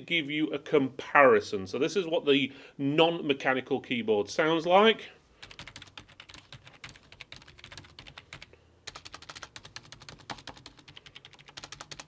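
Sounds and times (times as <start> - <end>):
soft keyboard typing: 5.4 - 12.0.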